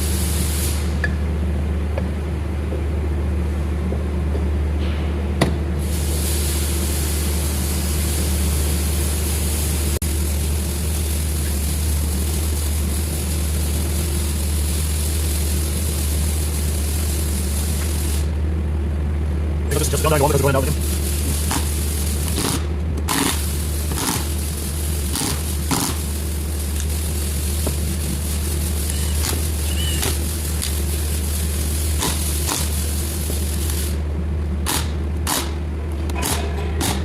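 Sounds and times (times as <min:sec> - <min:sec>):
hiss: 0:00.0 - 0:01.0, 0:05.8 - 0:18.4, 0:19.7 - 0:34.0
machine humming: 0:05.8 - 0:37.0.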